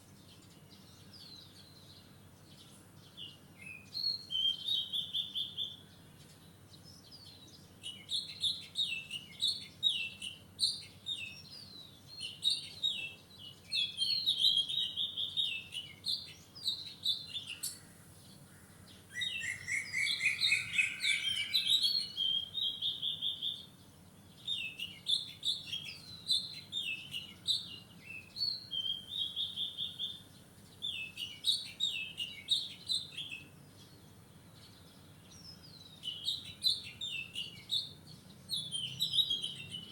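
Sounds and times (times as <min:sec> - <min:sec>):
songbirds chirping and whistling: 0:00.0 - 0:39.9
low bird trill: 0:18.5 - 0:23.7.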